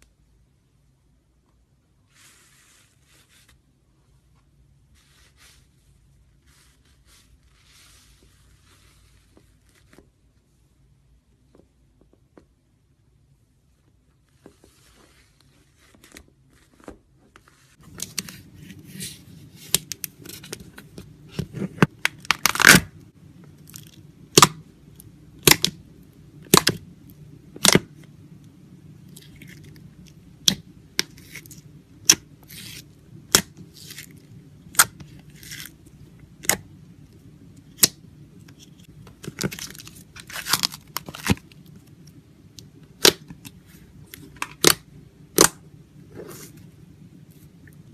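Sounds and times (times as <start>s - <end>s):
sticky slime rustling: 28.8s - 47.9s.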